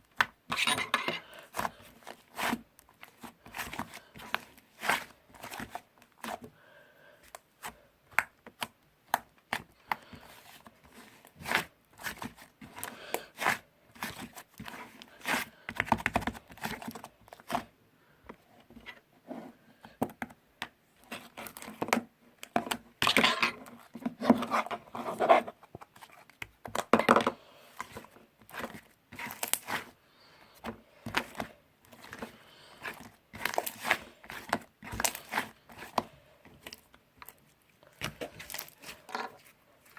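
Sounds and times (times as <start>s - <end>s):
crinkling and tearing: 28.5s - 29.9s, 31.2s - 39.9s.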